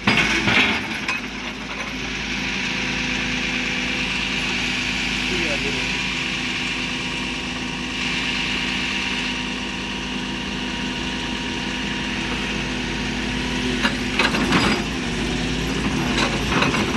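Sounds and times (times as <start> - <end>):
metal clanks and knocks: 0.0 - 2.0, 13.8 - 15.0, 15.9 - 16.9
excavator engine idling: 0.0 - 16.9.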